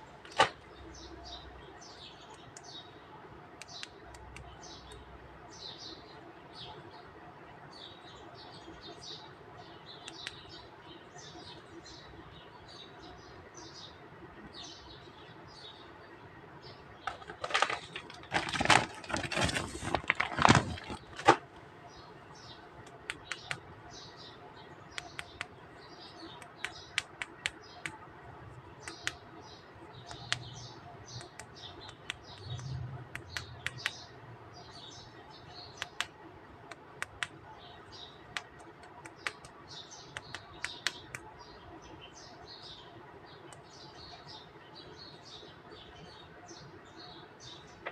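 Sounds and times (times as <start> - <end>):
small birds chirping: 0.0 - 47.9
plastic toy figures clicking: 17.1 - 21.4
rustling: 17.1 - 21.4.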